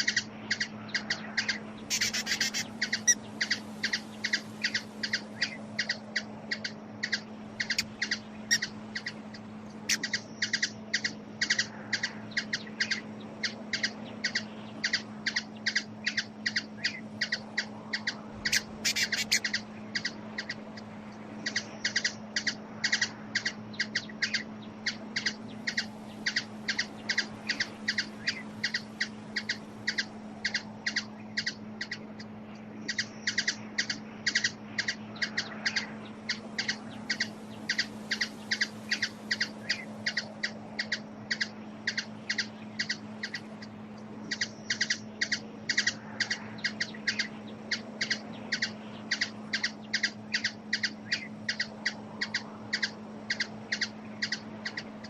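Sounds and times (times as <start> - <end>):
bird chip notes: 0.0 - 6.0
steady low hum: 0.0 - 55.0.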